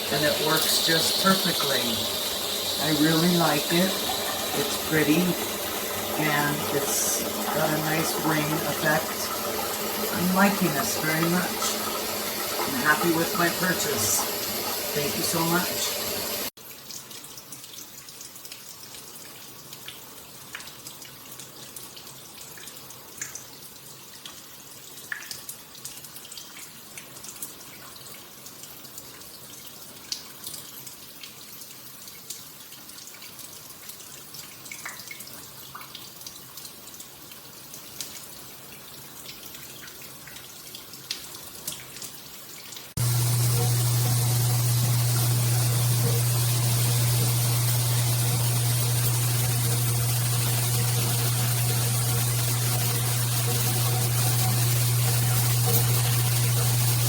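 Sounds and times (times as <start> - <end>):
shower spraying water: 0.0 - 16.6, 42.9 - 57.0
drips and splashes: 0.0 - 57.0.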